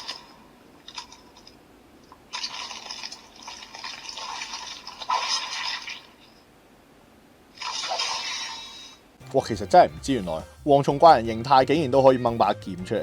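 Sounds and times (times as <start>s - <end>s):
noisy hiss-like toy sound effect: 7.6s - 9.0s.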